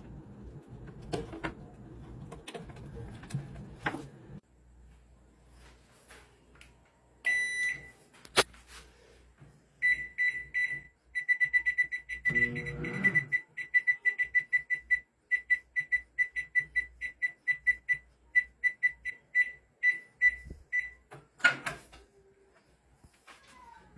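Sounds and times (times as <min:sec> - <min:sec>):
microwave buzzer beeping: 0:07.2 - 0:08.0, 0:09.8 - 0:21.1.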